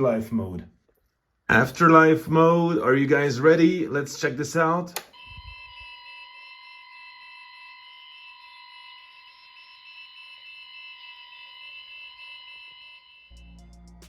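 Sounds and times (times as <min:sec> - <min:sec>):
high electronic warning tone: 0:05.1 - 0:14.0.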